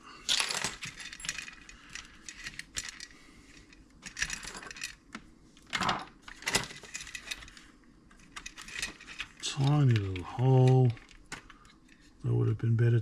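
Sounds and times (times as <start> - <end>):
metal parts clinking: 0.2 - 5.0, 5.7 - 11.8
tools clattering on workbench: 0.3 - 1.6, 5.7 - 7.4.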